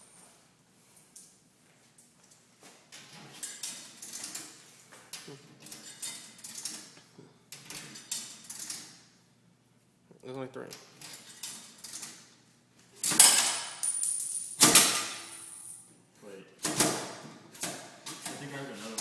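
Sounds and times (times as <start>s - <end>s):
coins clinking in coin mechanism: 13.1s - 15.8s.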